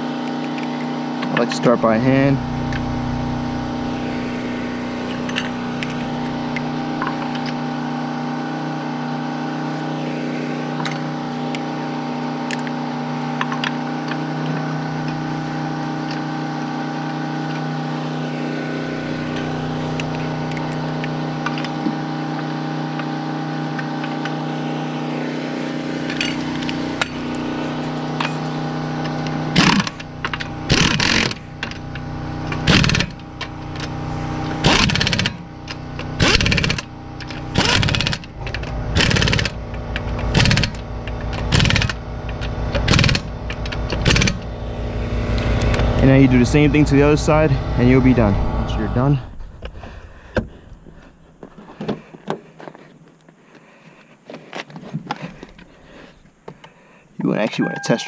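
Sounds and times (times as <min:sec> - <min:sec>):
steady machine hum: 0:00.0 - 0:52.6
loud noisy bursts: 0:01.6 - 0:07.1
lug nuts clicking: 0:26.0 - 0:44.5.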